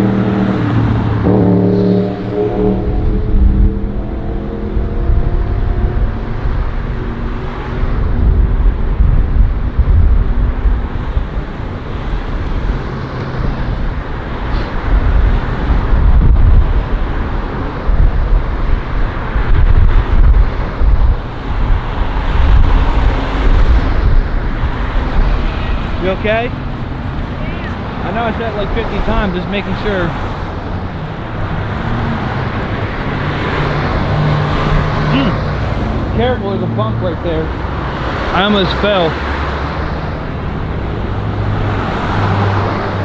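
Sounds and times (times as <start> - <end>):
road traffic: 0.0 - 43.0
vehicle passing by: 0.0 - 43.0
wind buffeting microphone: 0.0 - 43.0.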